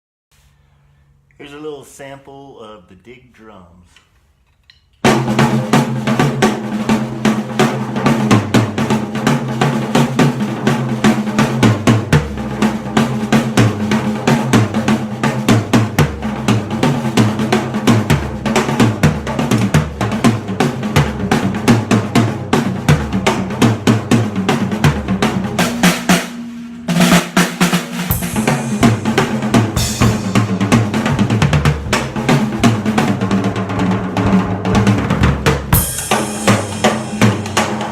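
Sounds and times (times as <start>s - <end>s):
snare and tom strokes: 5.0s - 37.9s
deep bass drum hits: 11.6s - 37.9s
cymbal wash: 25.4s - 31.1s, 35.8s - 37.9s.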